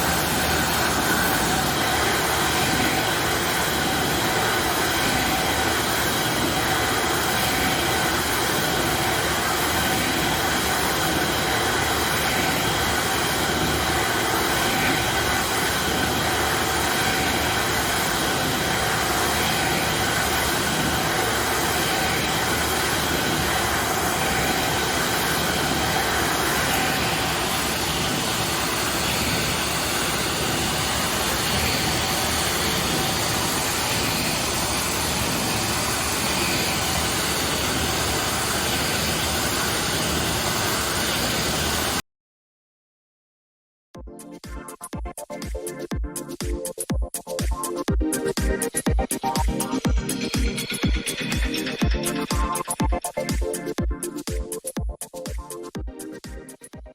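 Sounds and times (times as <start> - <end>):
deburring machine whining: 0.0 - 42.0, 48.1 - 53.6.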